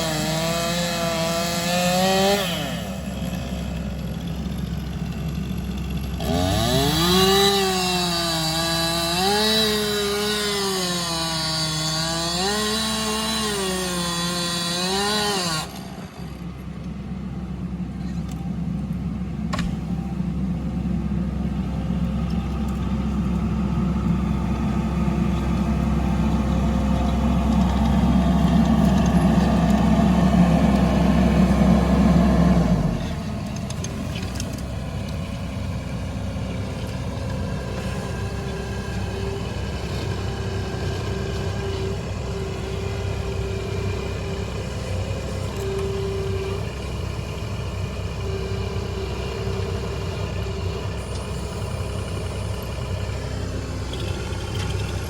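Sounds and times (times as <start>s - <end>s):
chainsaw cutting wood: 0.0s - 16.4s
engine running: 0.0s - 55.0s.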